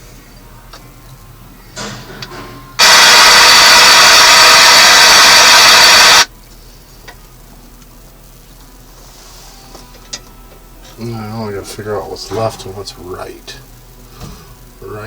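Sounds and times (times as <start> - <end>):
loud static hiss from speaker: 2.7 - 6.5, 7.2 - 15.0.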